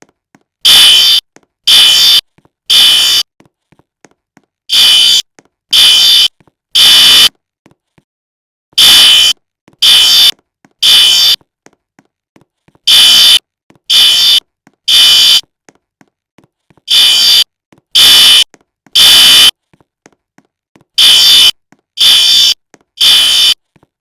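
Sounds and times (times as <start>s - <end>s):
fire alarm beeps: 0.7s - 3.3s, 4.7s - 5.2s, 5.8s - 7.3s, 8.8s - 11.4s, 12.9s - 15.4s, 16.9s - 19.5s, 21.0s - 23.6s.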